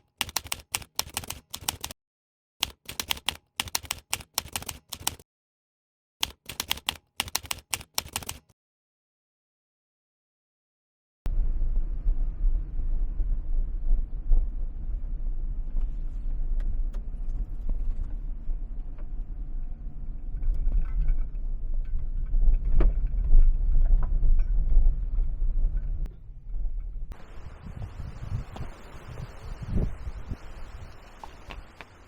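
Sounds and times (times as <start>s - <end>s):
strong wind buffeting microphone: 11.4s - 32.0s.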